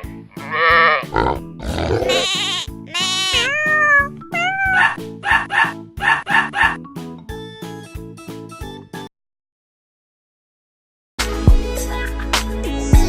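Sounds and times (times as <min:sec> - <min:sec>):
pig grunts: 0:00.0 - 0:03.6, 0:04.6 - 0:06.8
goat and sheep bleats: 0:00.0 - 0:05.6
upbeat children's music: 0:02.2 - 0:09.1, 0:11.2 - 0:13.0.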